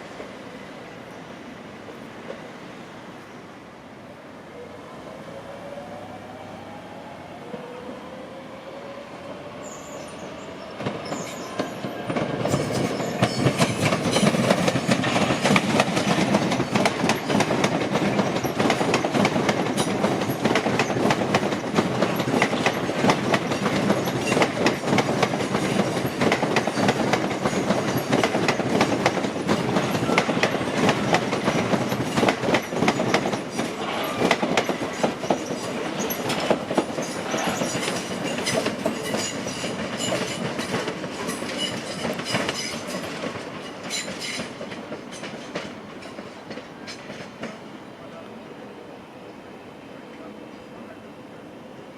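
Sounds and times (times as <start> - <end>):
train wheels clattering on rails: 10.8 - 47.8.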